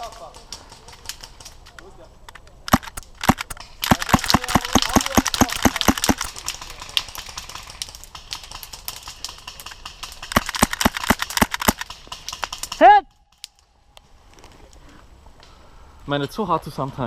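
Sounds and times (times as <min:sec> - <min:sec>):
airsoft gunfire cracks: 0:02.7 - 0:06.3
faint clicks: 0:02.7 - 0:06.3.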